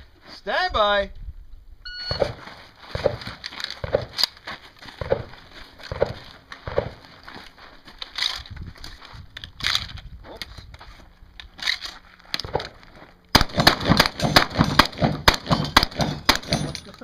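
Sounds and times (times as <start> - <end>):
shot timer beep: 1.9 - 2.4
shotgun shots: 13.3 - 16.8.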